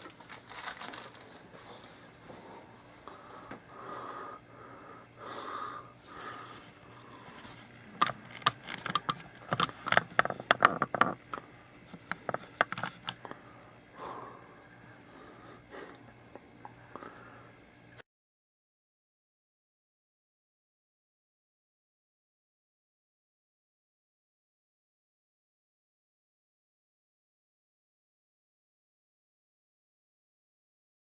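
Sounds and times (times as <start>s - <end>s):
plastic parts rubbing and handling: 6.0s - 13.2s
sharp plastic clicks and knocks: 8.0s - 11.2s, 11.9s - 13.2s.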